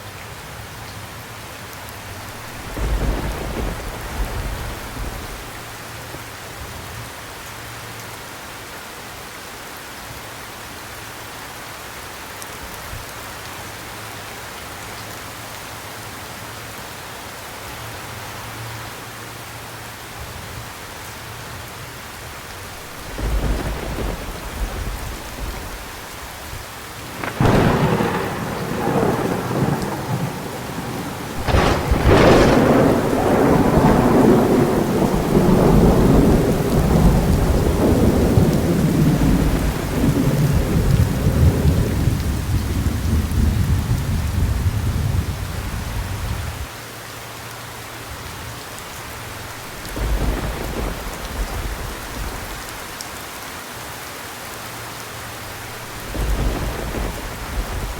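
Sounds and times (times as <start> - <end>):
heavy rain: 0.0 - 57.9
rolling thunder: 2.1 - 5.8, 22.6 - 46.7, 49.6 - 52.9, 55.5 - 57.9
sharp thunder crack: 2.3 - 5.7, 22.7 - 26.3, 27.1 - 45.4, 49.6 - 52.8, 55.7 - 57.9.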